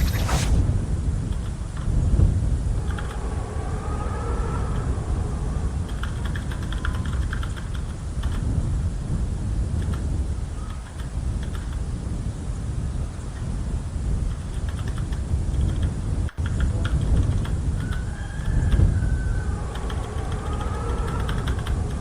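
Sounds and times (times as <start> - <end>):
low rumble: 0.0 - 1.2, 1.9 - 9.1.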